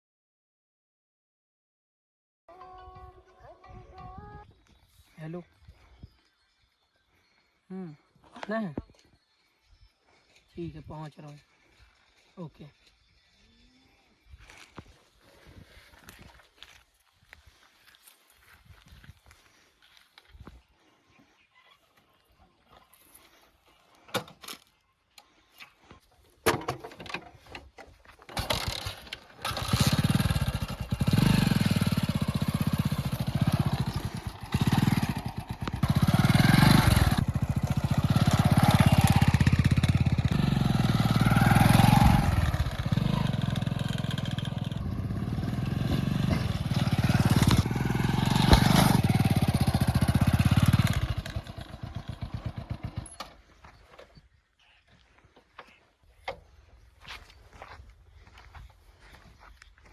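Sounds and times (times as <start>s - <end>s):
vehicle engine running loudly: 29.4s - 53.0s.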